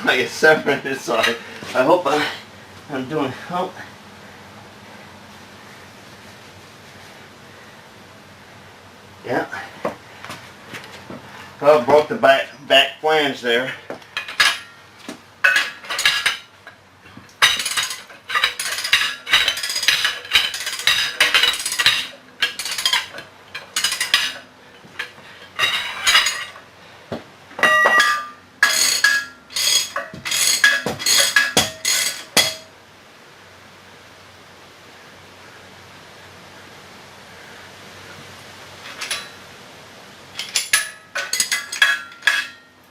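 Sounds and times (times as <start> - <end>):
faint steady hiss: 0.0 - 42.9
metal parts clanking: 14.2 - 14.8, 15.4 - 26.7, 27.6 - 32.7, 38.8 - 39.4, 40.4 - 42.7.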